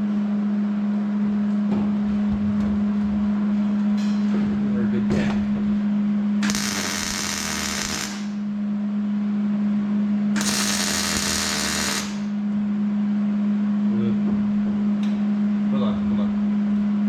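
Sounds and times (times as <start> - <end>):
steady low hum: 0.0 - 17.0
crackling welding: 6.4 - 8.4, 10.4 - 12.4.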